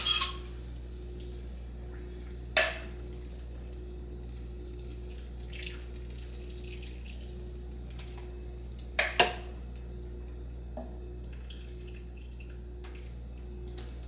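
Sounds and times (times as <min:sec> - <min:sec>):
utensil clinking on crock: 0:00.0 - 0:00.5.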